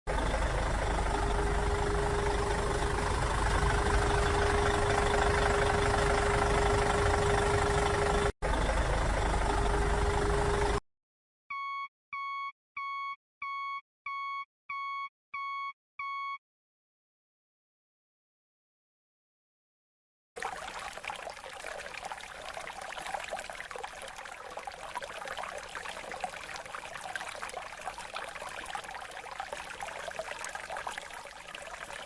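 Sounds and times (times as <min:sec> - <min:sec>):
noisy engine running: 0:00.1 - 0:10.8.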